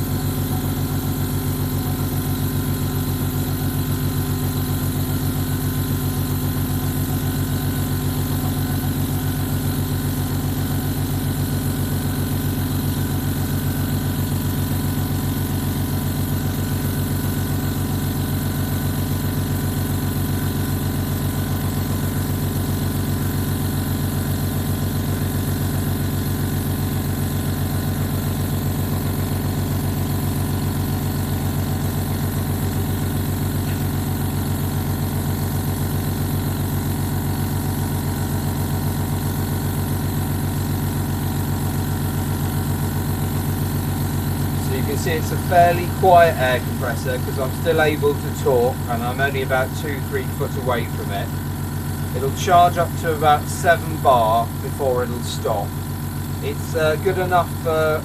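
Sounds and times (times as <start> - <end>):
air compressor motor drone: 0.0 - 58.0.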